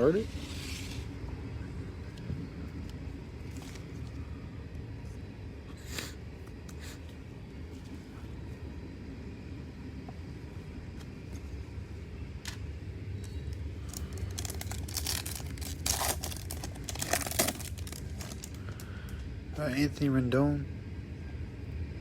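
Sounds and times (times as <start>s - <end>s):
road traffic rumble: 0.0s - 22.0s
foil wrapper crinkling and tearing: 13.8s - 19.0s.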